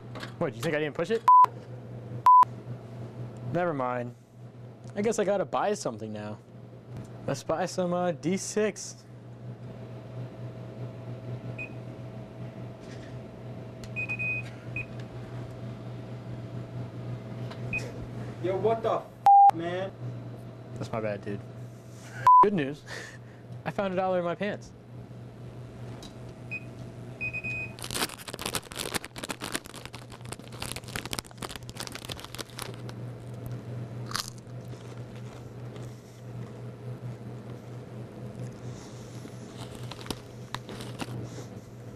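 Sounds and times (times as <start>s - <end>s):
low machine hum: 0.0s - 41.9s
keypad beeping: 19.3s - 19.5s
crackling and crunching: 27.7s - 36.6s, 39.4s - 41.2s.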